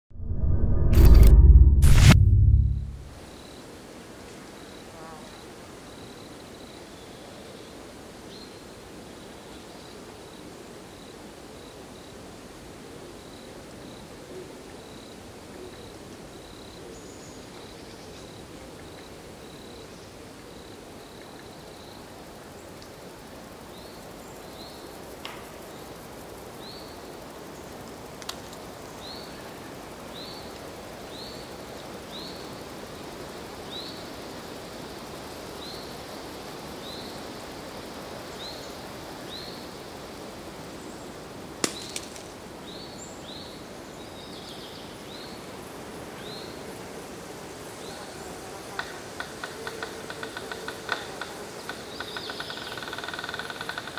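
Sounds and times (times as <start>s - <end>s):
steady low forest rush: 0.1s - 3.5s
sharp clicks: 0.6s - 3.1s.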